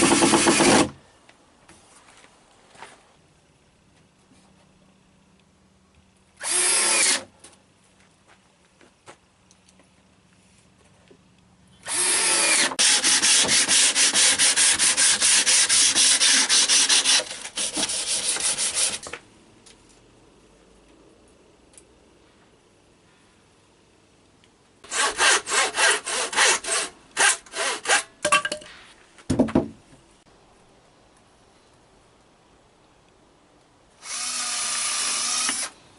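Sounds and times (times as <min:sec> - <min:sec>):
rapid wood rasping strokes: 0:12.0 - 0:19.1, 0:24.9 - 0:28.0
tool rasping on wood: 0:24.9 - 0:28.0.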